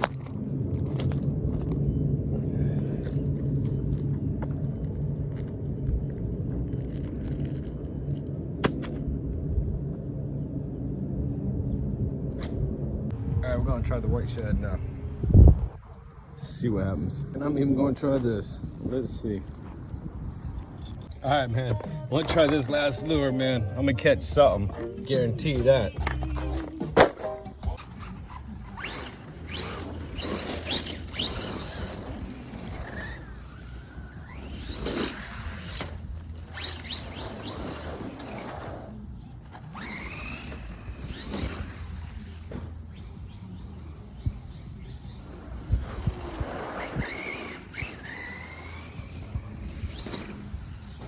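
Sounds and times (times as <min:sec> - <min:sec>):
steady low rumble: 0:00.0 - 0:37.2.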